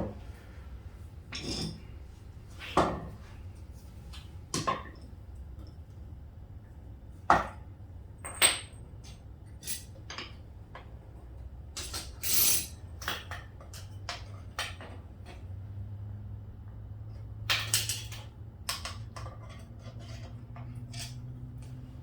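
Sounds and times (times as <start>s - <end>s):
metal tools clinking: 1.3s - 1.9s, 11.8s - 12.8s.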